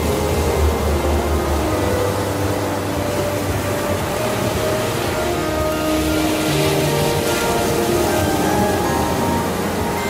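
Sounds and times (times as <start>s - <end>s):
instrumental music of long held notes: 0.0s - 10.0s
steady wash of noise: 0.0s - 10.0s.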